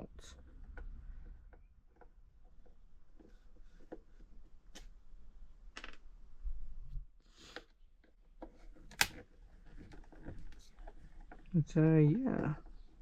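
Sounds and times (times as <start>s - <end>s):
plastic and metal parts clicking: 7.6s - 11.5s.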